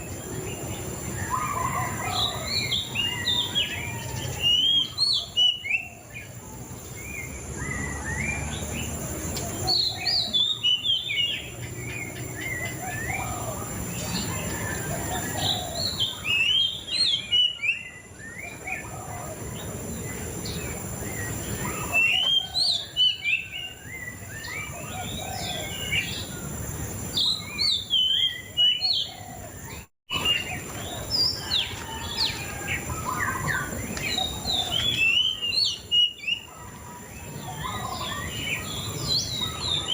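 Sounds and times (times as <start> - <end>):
songbird chirping and whistling: 0.0 - 6.4, 7.0 - 26.5, 27.1 - 39.9.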